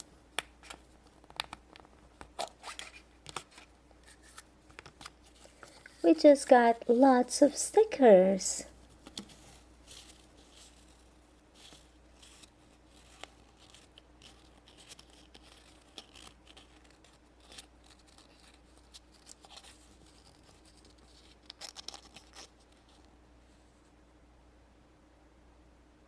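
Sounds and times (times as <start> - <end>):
packaging rustling and crinkling: 8.8 - 23.0.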